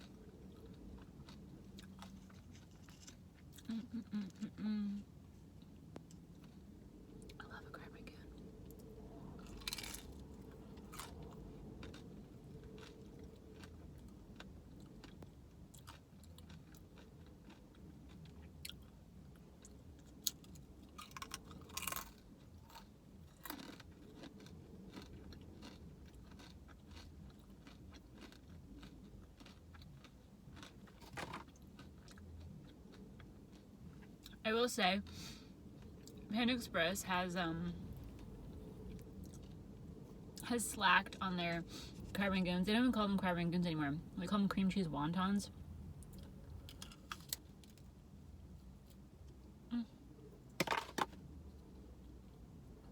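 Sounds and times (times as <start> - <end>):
crunchy food chewing: 0.0 - 4.7, 8.2 - 34.4, 37.8 - 40.4, 46.0 - 48.0.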